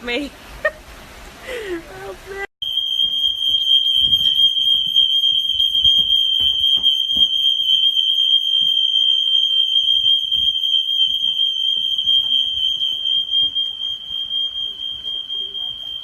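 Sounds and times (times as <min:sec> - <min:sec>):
electronic alarm tone: 0:02.6 - 0:16.0.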